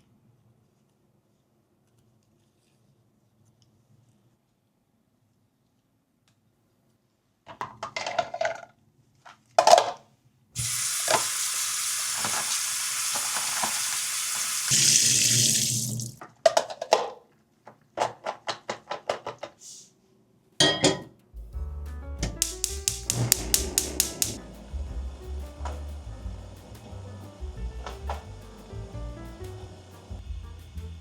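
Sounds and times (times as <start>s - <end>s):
kitchen tap running: 10.6s - 16.2s, 22.4s - 24.4s.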